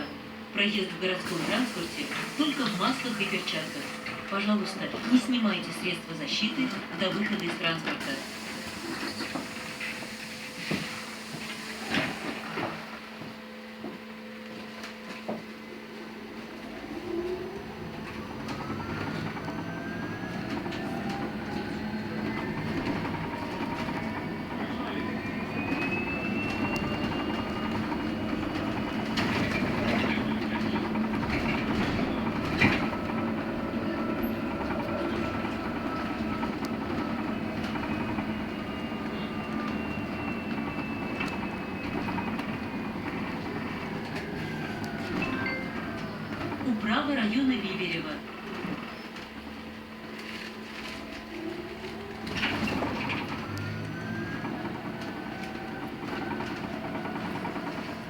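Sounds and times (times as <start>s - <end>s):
road and tyre noise: 15.3s - 47.2s, 48.5s - 58.0s
bus body rattling and knocking: 17.9s - 58.0s.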